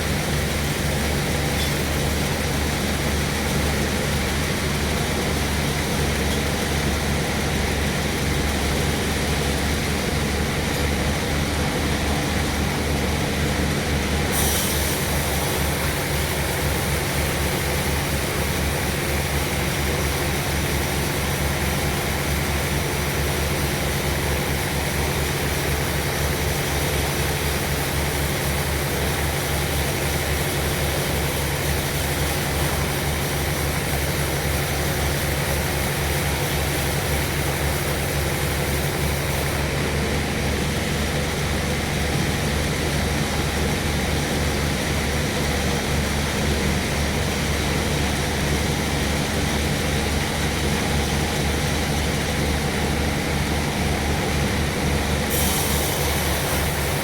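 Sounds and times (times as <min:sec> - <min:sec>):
sawmill machinery running: 0:00.0 - 0:57.0.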